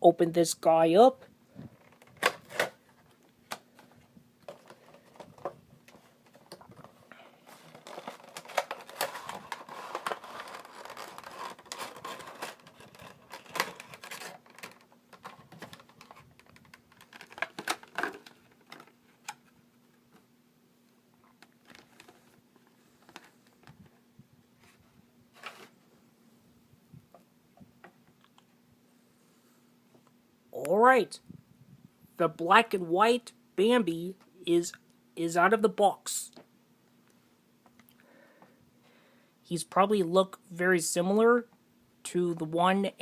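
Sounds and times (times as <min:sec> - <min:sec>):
packaging rustling and scraping: 0:01.7 - 0:20.2, 0:21.2 - 0:23.9, 0:24.6 - 0:25.8.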